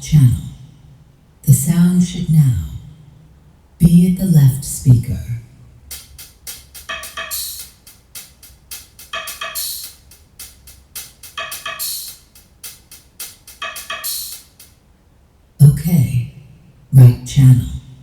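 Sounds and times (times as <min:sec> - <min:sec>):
clicky percussion hits: 0:05.8 - 0:14.9
cymbal splash: 0:05.9 - 0:14.7.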